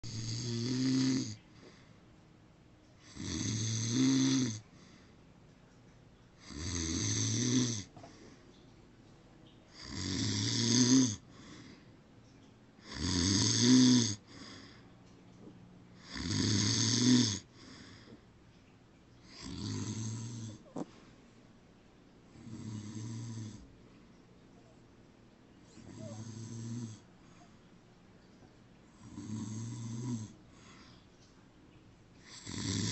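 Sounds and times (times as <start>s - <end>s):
man snoring loudly: 0.1s - 1.4s, 3.0s - 4.6s, 6.4s - 7.9s, 9.8s - 11.2s, 12.8s - 14.3s, 16.0s - 17.5s, 19.3s - 20.6s, 22.4s - 23.6s, 25.9s - 27.0s, 29.0s - 30.4s, 32.2s - 32.9s.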